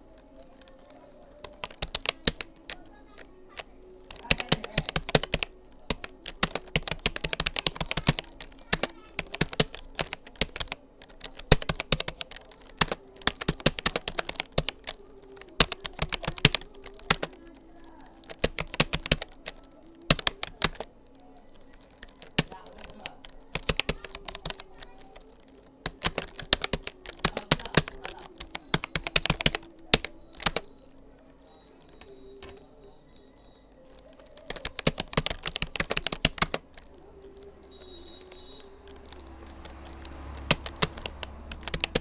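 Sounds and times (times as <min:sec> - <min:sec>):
computer keyboard key clicks: 0:00.2 - 0:20.9, 0:21.5 - 0:30.8, 0:33.8 - 0:42.0.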